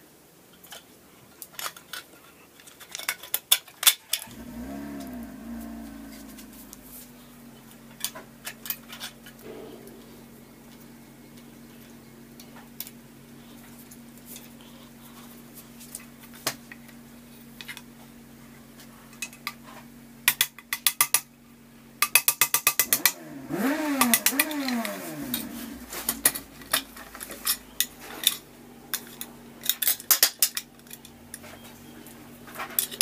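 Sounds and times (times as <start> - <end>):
steady low hum: 4.3 - 20.3, 22.8 - 33.0
metallic clicks of scooter parts: 20.2 - 21.3, 22.0 - 31.6, 32.5 - 33.0.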